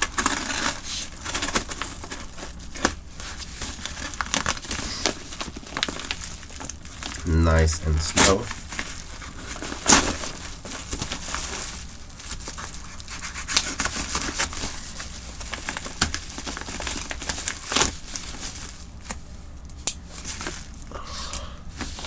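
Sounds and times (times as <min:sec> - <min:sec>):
packaging crinkling and tearing: 0:00.0 - 0:20.9.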